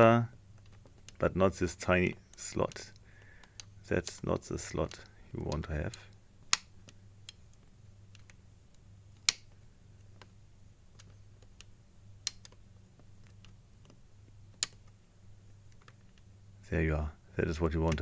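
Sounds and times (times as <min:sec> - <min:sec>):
low steady hum: 0:00.0 - 0:18.0
combination lock clicking: 0:02.3 - 0:09.6, 0:11.0 - 0:12.6, 0:13.2 - 0:15.0.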